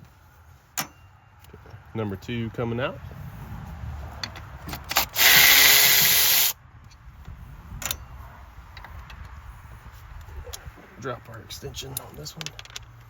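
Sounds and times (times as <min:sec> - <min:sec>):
tool and bolt clicks: 0:04.2 - 0:06.2
cordless ratchet running: 0:05.0 - 0:06.6.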